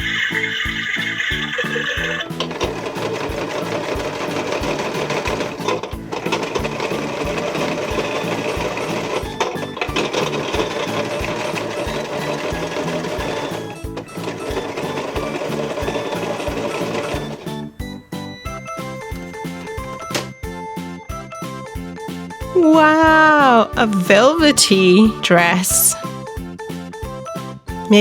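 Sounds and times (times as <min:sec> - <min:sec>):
toy washing machine whirring: 0:00.0 - 0:21.8.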